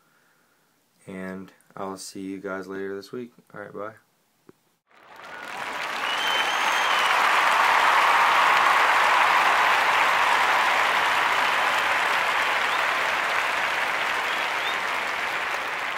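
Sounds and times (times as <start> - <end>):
crowd applause: 4.9 - 15.9.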